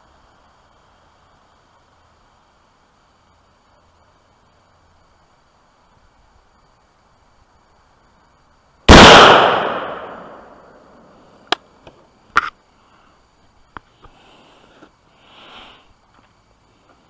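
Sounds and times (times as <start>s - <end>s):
rifle shot with echo: 8.9s - 10.9s.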